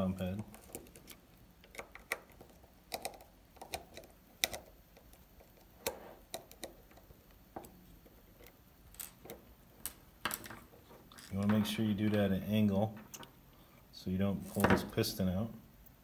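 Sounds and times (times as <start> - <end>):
hand tools clicking and tapping: 0.4 - 12.3.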